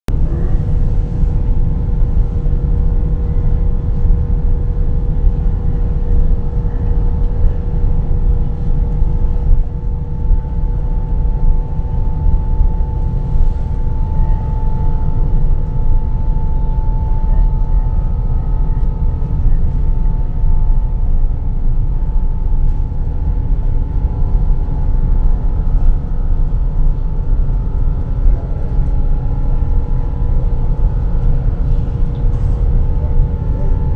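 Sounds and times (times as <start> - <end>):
faint steady hums: 0.1 - 33.9
jet cabin engine and airflow rush: 0.1 - 33.9.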